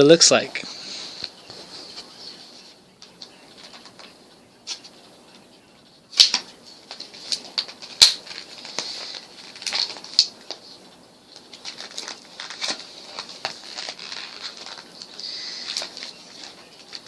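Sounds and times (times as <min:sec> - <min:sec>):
packaging crackling and snapping: 0:06.2 - 0:10.6, 0:11.3 - 0:17.0.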